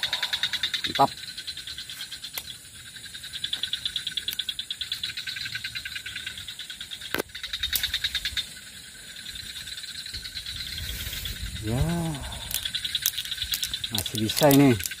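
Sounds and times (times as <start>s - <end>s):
pulsing animal chorus: 0.0s - 1.5s, 3.8s - 14.9s
sharp clicks: 12.2s - 15.0s.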